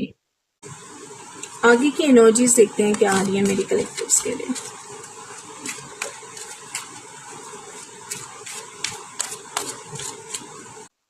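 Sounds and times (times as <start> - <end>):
cards shuffling: 2.8 - 10.9.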